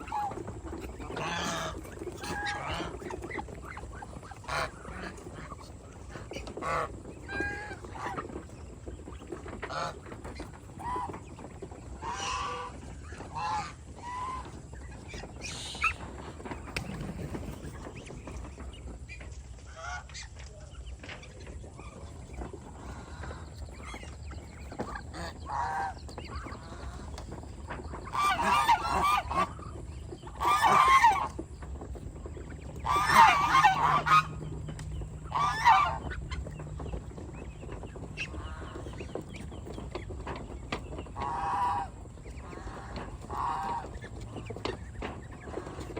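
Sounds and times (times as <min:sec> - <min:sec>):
geese honking: 0:00.0 - 0:20.4, 0:21.5 - 0:45.9.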